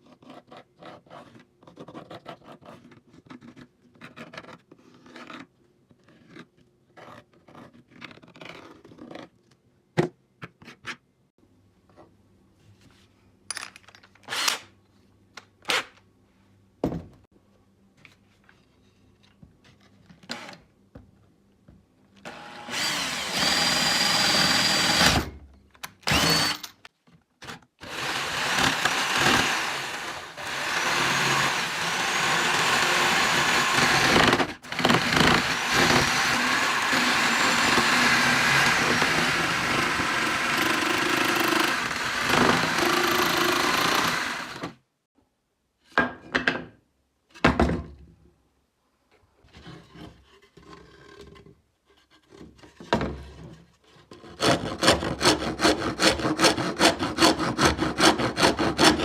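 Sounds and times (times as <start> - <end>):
tools knocking and clicking: 13.5 - 14.3
electric power tool whining: 22.3 - 25.3, 26.1 - 26.7, 27.8 - 44.8.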